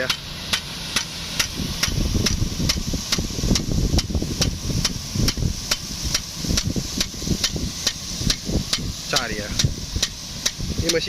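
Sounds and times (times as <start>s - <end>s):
impact sprinkler clacking: 0.0s - 11.0s
low rumble: 0.0s - 11.0s
water jet hissing: 0.0s - 11.0s.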